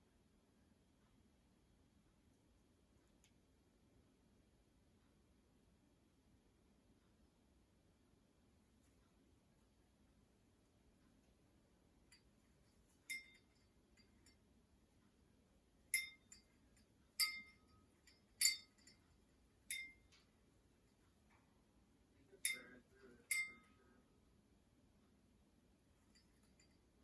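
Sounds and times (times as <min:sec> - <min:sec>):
small metal bell dings: 0:12.1 - 0:14.4, 0:15.9 - 0:20.3, 0:22.3 - 0:23.9, 0:26.0 - 0:27.0.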